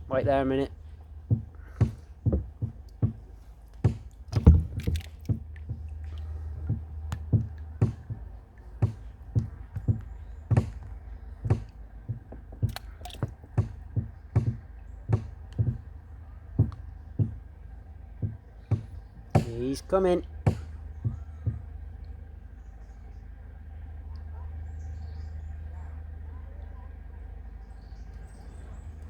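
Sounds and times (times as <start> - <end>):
water slapping: 0.0 - 22.2
low steady hum: 0.0 - 29.0
hollow knocks on kayak hull: 0.1 - 21.8.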